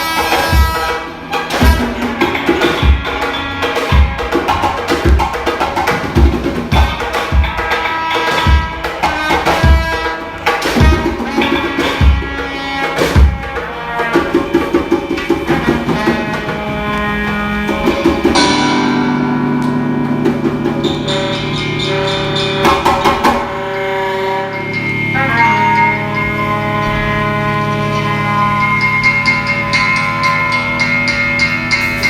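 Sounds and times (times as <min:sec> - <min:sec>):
samba drumming: 0:00.0 - 0:32.0
long held notes: 0:06.6 - 0:32.0.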